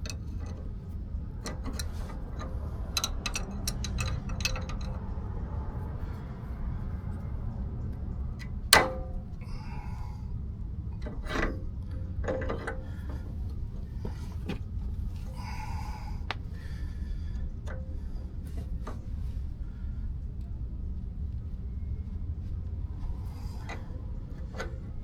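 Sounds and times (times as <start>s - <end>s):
steady low hum: 0.0s - 25.0s
light metal clinks: 1.4s - 5.0s.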